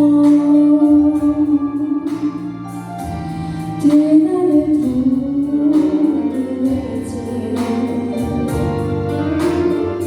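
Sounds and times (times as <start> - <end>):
pop instrumental backing: 0.0 - 10.0.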